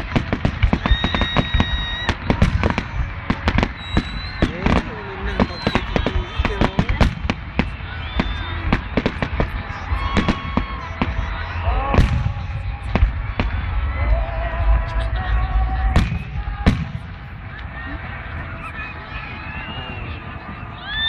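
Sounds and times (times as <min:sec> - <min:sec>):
heavy firework booms: 0:00.0 - 0:14.8, 0:15.8 - 0:17.3
fireworks popping and crackling: 0:00.0 - 0:18.0
low rumble: 0:04.5 - 0:20.8.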